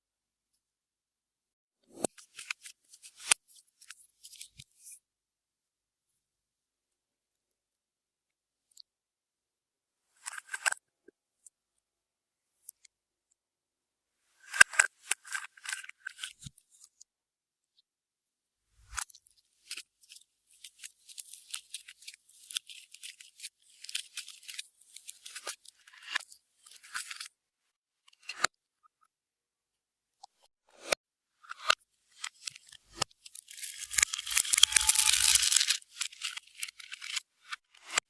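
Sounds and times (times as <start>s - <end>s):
slime crackling and popping: 33.4s - 35.8s.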